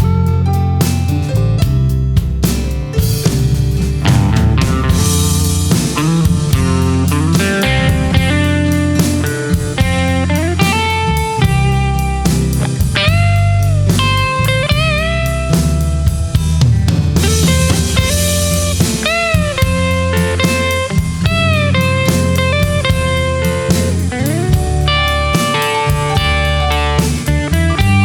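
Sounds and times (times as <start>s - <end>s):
bass: 0.0s - 28.0s
drum kit: 0.0s - 28.0s
lead guitar melody: 0.0s - 28.0s
cymbal crash: 3.1s - 9.5s.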